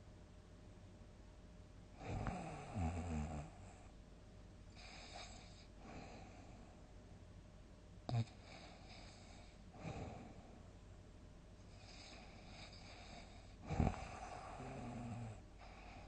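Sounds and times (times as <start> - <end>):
soft breath: 11.6 - 16.0
person snoring: 11.9 - 15.4.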